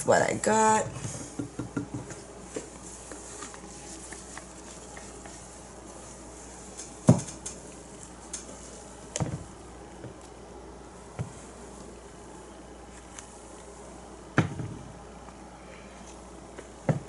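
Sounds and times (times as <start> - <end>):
knocks and taps on tabletop: 1.1 - 2.2.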